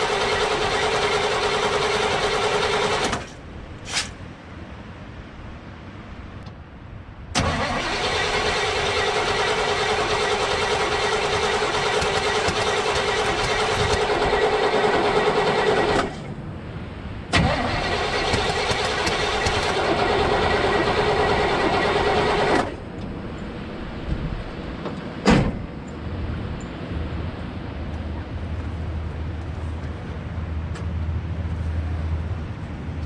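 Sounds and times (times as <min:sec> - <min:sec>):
engine starter cranking: 0:00.0 - 0:03.4, 0:07.4 - 0:16.2, 0:17.4 - 0:22.8.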